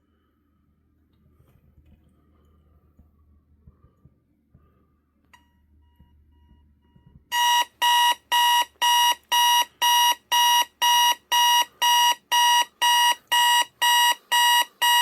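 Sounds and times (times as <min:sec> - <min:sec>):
alarm clock beeping: 0:05.4 - 0:15.0
faint intermittent alarm tone: 0:05.4 - 0:15.0.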